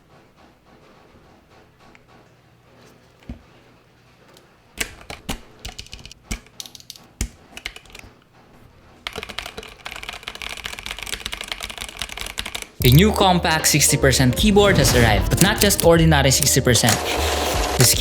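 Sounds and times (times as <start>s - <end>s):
mechanical keyboard typing: 4.8s - 8.1s, 9.0s - 13.1s, 14.7s - 17.2s, 17.8s - 18.0s.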